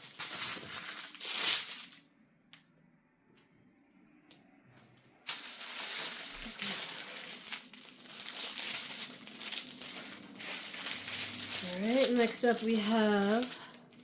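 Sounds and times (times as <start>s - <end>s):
plastic bags crinkling: 0.0s - 2.0s, 5.2s - 14.0s.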